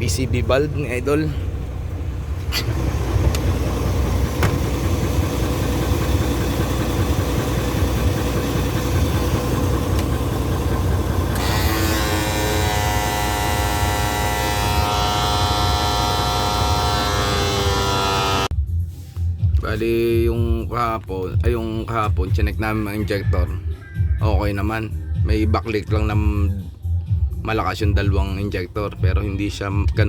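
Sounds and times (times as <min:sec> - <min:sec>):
diesel truck engine idling: 0:00.0 - 0:17.8
humming tone with overtones: 0:01.3 - 0:18.5.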